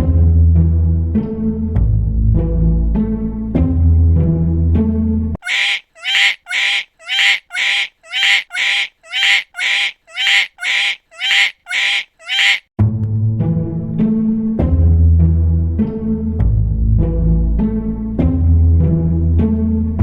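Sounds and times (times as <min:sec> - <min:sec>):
duck quacking: 0:05.4 - 0:12.7.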